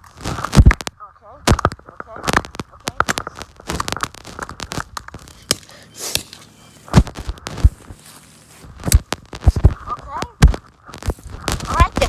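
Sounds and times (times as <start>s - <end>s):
plastic phone being smashed: 1.5s - 6.3s.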